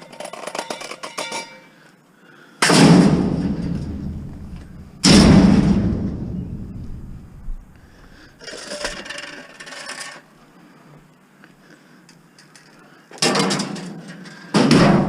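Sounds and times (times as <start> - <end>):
scrap metal scraping and clattering: 2.7 - 6.5, 8.4 - 10.3.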